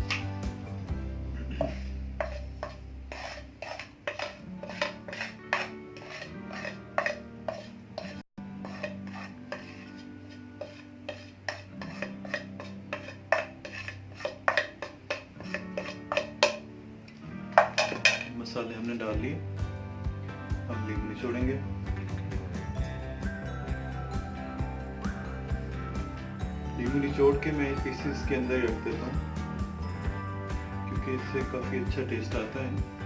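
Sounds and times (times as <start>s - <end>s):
metal spoons clinking on bowls: 0.0s - 0.3s, 1.6s - 10.0s, 10.6s - 16.7s, 17.6s - 18.4s
soft background music: 0.0s - 33.0s.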